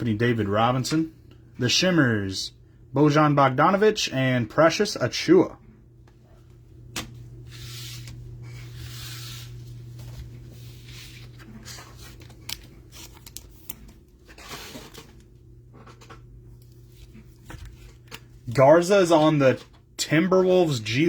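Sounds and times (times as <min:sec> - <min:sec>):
low electrical hum: 0:00.0 - 0:21.0
cards being handled: 0:06.9 - 0:19.8.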